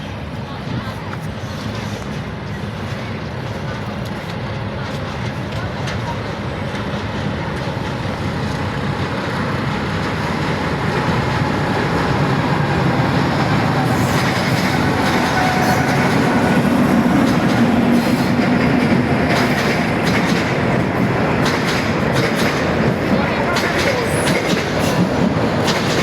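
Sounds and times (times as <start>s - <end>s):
train rumbling on rails: 0.0s - 26.0s
wheels clicking over rail joints: 9.6s - 26.0s.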